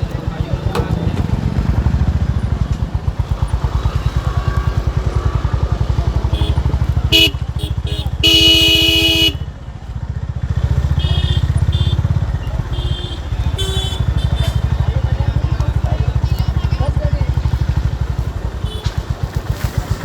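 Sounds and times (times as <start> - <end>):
motorcycle engine thumping: 0.0 - 9.4, 10.4 - 20.0
motorcycle horn toots: 3.2 - 9.5, 10.6 - 15.1, 18.4 - 19.2.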